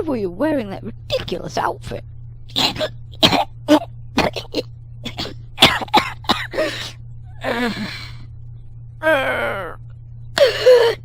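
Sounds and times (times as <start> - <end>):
person coughing: 2.5 - 8.1, 10.4 - 11.0
person groaning: 7.4 - 8.2, 9.0 - 9.8.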